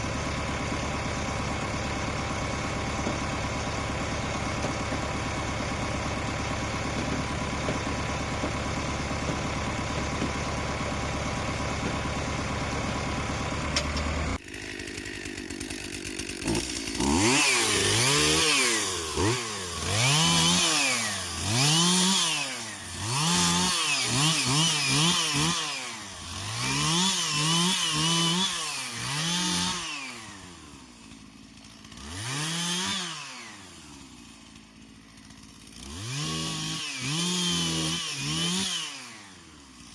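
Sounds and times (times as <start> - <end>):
tractor diesel engine idling: 0.0 - 17.3
chainsaw revving: 0.0 - 39.9.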